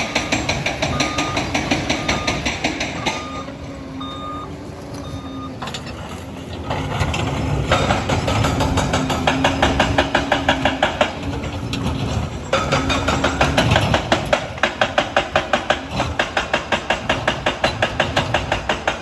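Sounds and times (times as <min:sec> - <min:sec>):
reversing alarm beeping: 0:00.0 - 0:05.9
bulldozer engine: 0:00.0 - 0:19.0
steel tracks clattering: 0:00.0 - 0:19.0.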